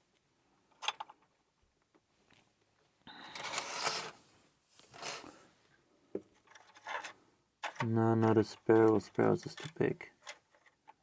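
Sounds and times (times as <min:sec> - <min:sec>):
lock picks rustling scrape: 0:03.3 - 0:04.2, 0:04.8 - 0:05.4, 0:06.4 - 0:07.8.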